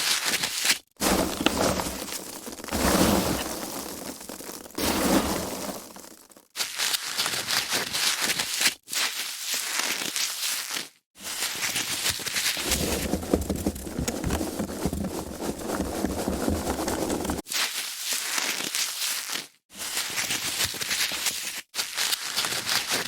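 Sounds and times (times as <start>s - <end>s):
foam packaging crackling: 0.2s - 8.7s, 12.2s - 17.4s.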